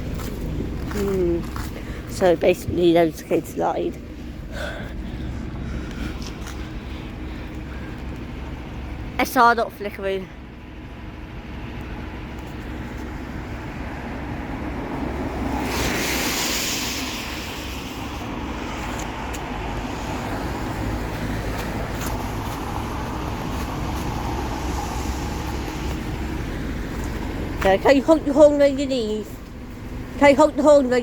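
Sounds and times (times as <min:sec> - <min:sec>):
diesel bus engine idling: 0:00.0 - 0:15.6, 0:16.5 - 0:31.0
air brake hiss: 0:15.6 - 0:18.3.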